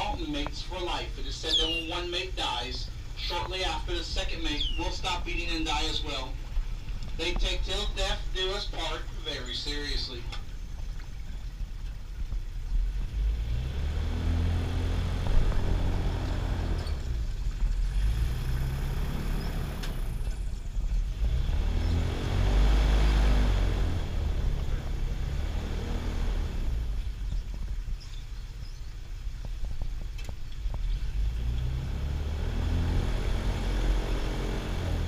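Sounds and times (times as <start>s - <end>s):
motor engine running: 10.4s - 35.0s.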